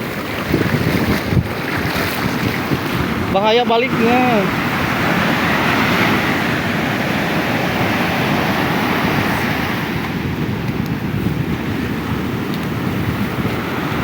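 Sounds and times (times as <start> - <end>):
ocean surf breaking: 0.0 - 14.0
wind buffeting microphone: 0.0 - 14.0.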